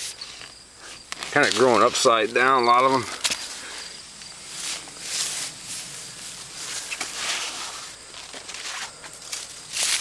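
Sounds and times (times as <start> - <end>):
light crackles: 0.0 - 10.0
footsteps through dry leaves: 4.4 - 10.0.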